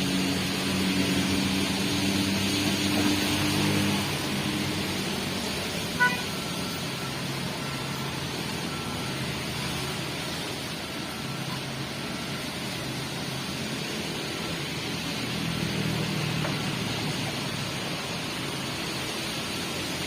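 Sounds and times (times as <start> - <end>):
diesel machinery running: 0.0 - 20.0
loud horn toot: 5.8 - 6.6.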